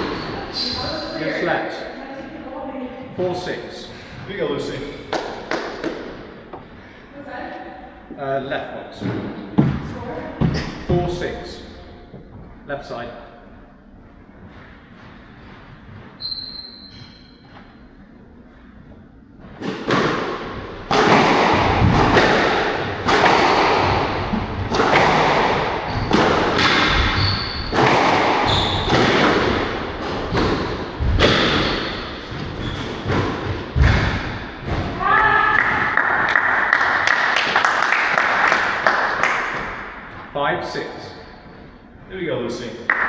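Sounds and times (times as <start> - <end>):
squash ball hitting rackets and walls: 4.8 - 6.6, 9.0 - 11.4, 19.4 - 40.3.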